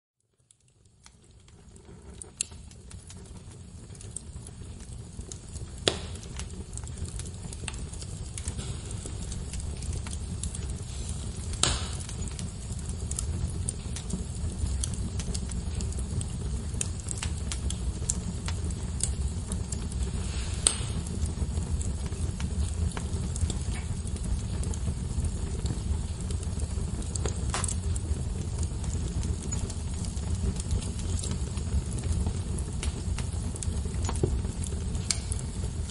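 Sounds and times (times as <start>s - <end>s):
fire flames rumbling: 0.2s - 35.9s
small fire crackles: 0.2s - 35.9s
burning wood popping loudly: 0.9s - 35.9s.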